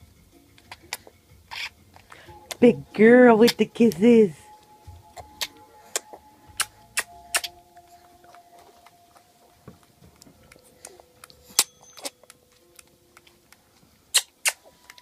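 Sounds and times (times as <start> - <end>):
baby making kissing noises: 1.0 - 1.7, 5.2 - 7.6, 14.1 - 14.7.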